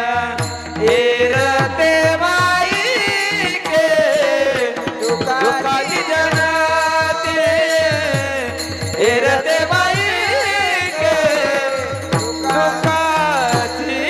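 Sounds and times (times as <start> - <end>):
person singing devotional song: 0.0 - 14.0
sustained instrumental tones: 8.6 - 14.0.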